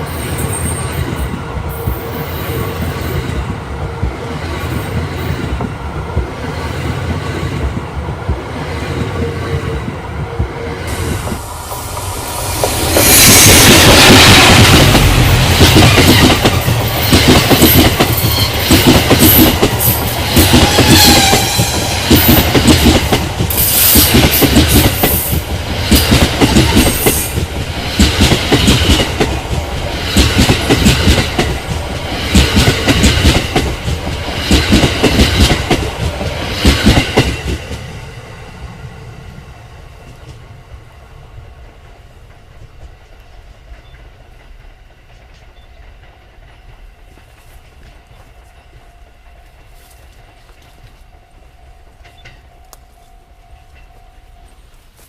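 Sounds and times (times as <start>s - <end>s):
train passing close by: 0.0s - 55.0s
train wheels clattering over rail joints: 10.9s - 37.9s.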